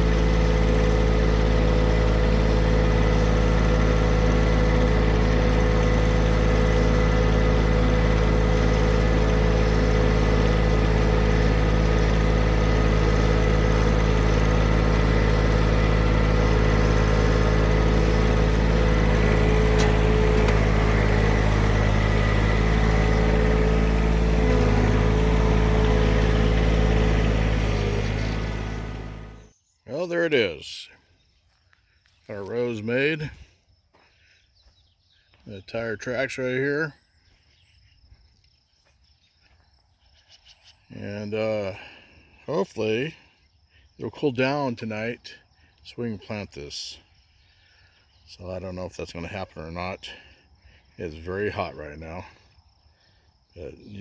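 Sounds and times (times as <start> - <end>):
vehicle engine running: 0.0 - 29.6.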